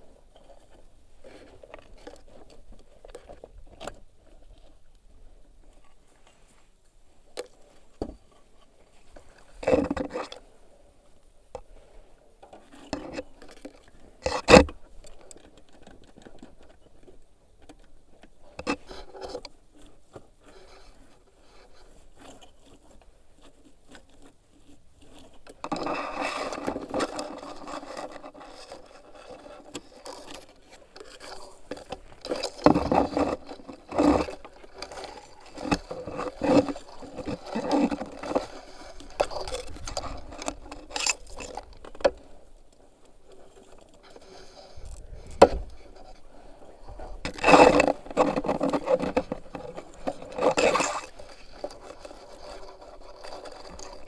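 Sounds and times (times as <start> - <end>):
scraping on parts: 18.6 - 42.3, 46.9 - 54.0.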